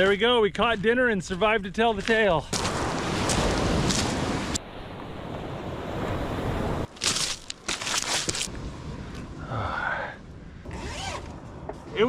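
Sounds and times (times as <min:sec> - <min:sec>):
rustling and crinkling: 0:06.9 - 0:08.6.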